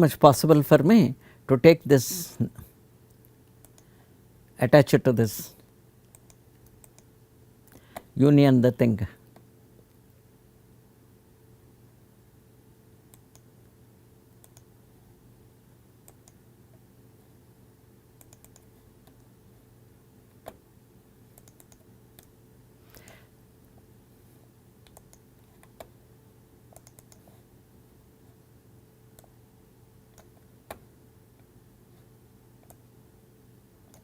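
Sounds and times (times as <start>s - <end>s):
steady low hum: 0.0s - 34.0s
computer mouse and keyboard clicks: 6.1s - 7.1s, 18.2s - 19.2s, 21.3s - 22.3s, 24.8s - 25.9s, 26.7s - 27.4s.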